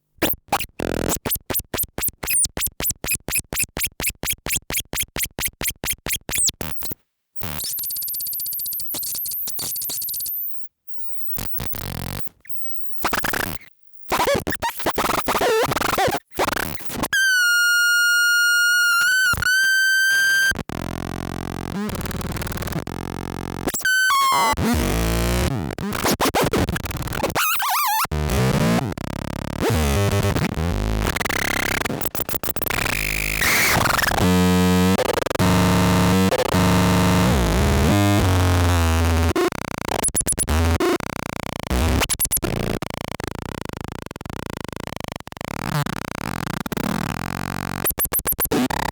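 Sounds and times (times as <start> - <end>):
glitchy electronic noise: 0.2 - 17.1, 29.6 - 40.9.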